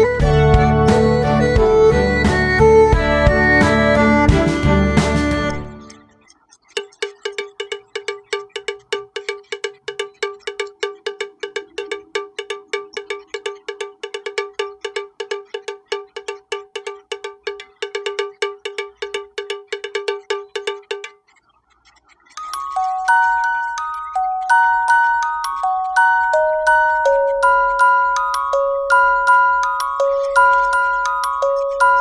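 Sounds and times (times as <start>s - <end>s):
chiming tune: 22.4s - 32.0s
metal bell struck rapidly: 22.4s - 32.0s.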